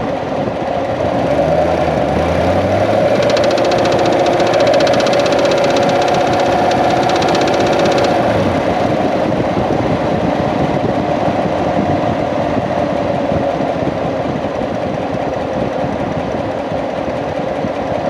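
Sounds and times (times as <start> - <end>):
car engine running: 0.9 - 10.3
rapid even ticking clatter: 1.4 - 9.5.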